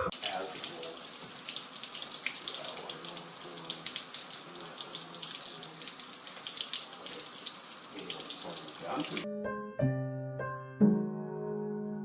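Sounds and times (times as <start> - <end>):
tap water running into sink: 0.0 - 9.3.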